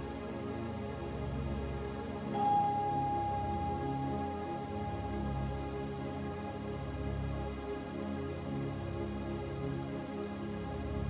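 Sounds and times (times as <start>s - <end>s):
steady noise hiss: 0.0s - 10.0s
vibraphone tones: 2.4s - 6.6s
soft sustained low notes: 2.4s - 7.8s.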